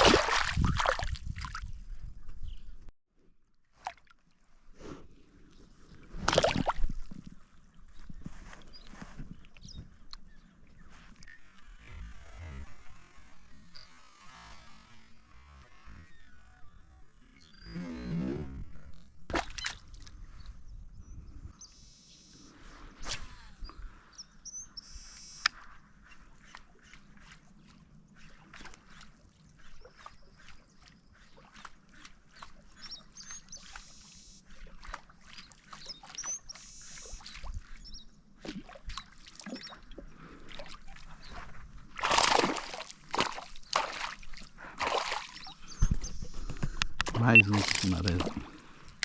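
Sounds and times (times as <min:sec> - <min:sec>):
water sloshing and splashing: 0:00.0 - 0:01.8, 0:05.8 - 0:10.2, 0:19.3 - 0:20.2, 0:26.3 - 0:49.0
small bird chirps: 0:35.3 - 0:38.1
fish thrashing at surface: 0:42.0 - 0:45.5.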